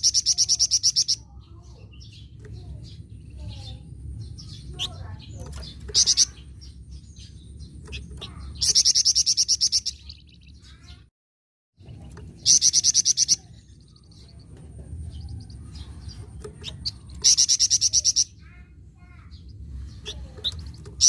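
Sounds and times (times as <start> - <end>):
songbird rattling trill: 0.0 - 11.0, 11.8 - 14.5, 15.1 - 18.5.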